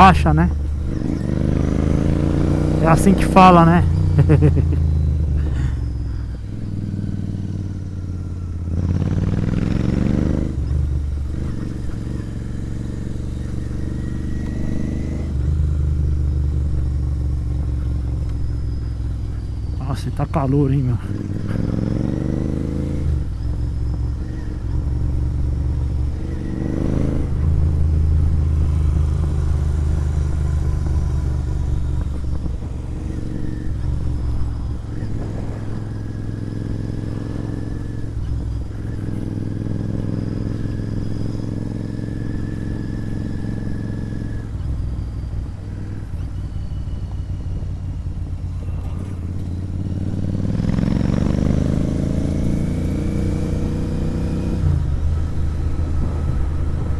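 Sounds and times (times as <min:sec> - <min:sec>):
motorcycle engine exhaust note: 0:00.0 - 0:56.9.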